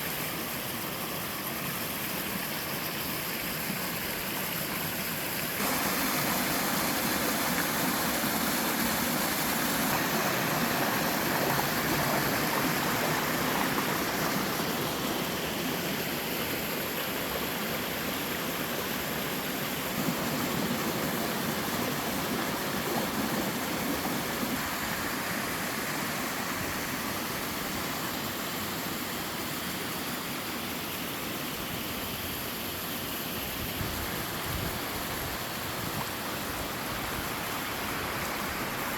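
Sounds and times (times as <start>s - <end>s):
stream over small waterfalls: 0.0s - 38.9s.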